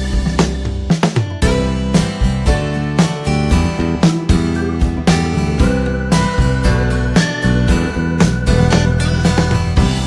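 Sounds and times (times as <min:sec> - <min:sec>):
guitar music with bass: 0:00.0 - 0:10.0.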